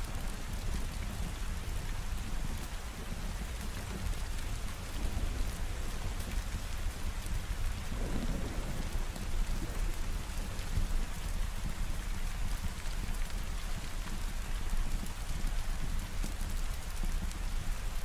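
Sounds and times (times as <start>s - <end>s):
heavy rain falling: 0.0s - 18.0s
rolling thunder rumble: 5.0s - 11.6s.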